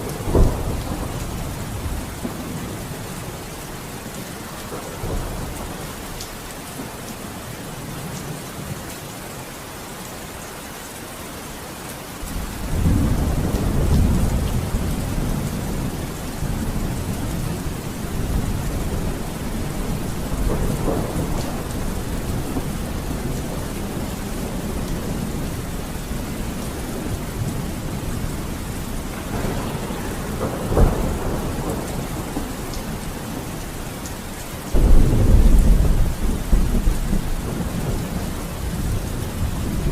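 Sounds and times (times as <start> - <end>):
thunder rumbling: 0.0 - 3.4, 12.2 - 39.9
steady rain falling: 0.0 - 39.9
sharp thunderclap: 0.1 - 2.6, 12.3 - 17.5, 18.1 - 25.7, 29.0 - 33.6, 34.7 - 39.9.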